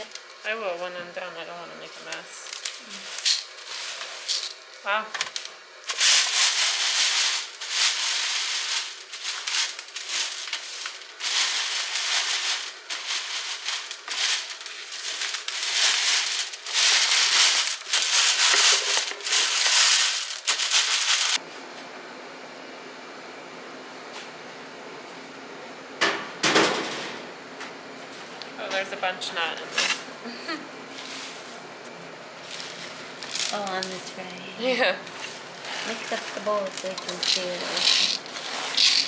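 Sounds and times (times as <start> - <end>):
berries rattling through mesh: 5.2 - 21.4, 32.4 - 34.4, 35.1 - 39.0.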